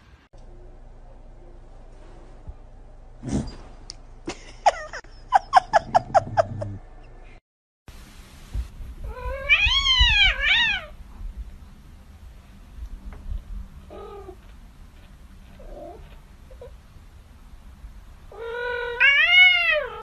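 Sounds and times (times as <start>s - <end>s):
cat meowing: 9.0s - 10.9s, 18.3s - 20.0s.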